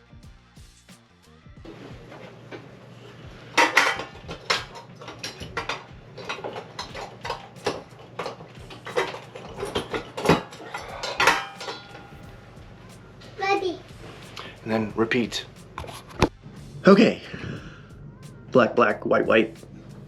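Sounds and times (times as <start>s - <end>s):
ceiling fan parts clinking: 1.7s - 16.2s.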